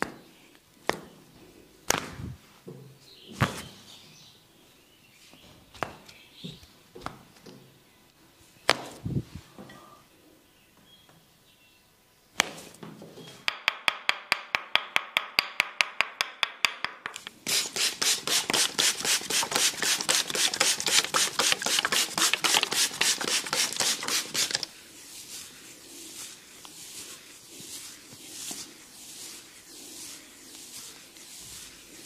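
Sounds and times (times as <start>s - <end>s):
wooden mallet tapping wooden wedge: 13.5s - 17.3s.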